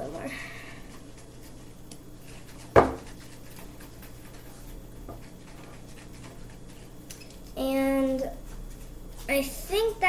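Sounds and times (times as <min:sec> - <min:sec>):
hard object knocking on tabletop: 0:02.7 - 0:03.1.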